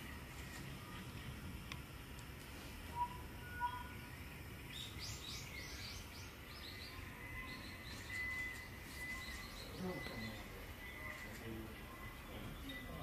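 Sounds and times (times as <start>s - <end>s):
small birds chirping: 2.6s - 13.0s
thin bird whistles: 2.9s - 4.0s.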